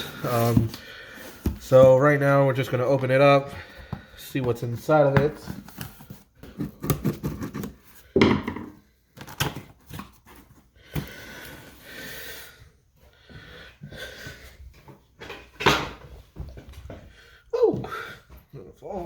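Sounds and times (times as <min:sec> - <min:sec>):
cardboard rustling and sliding: 0:00.0 - 0:03.4.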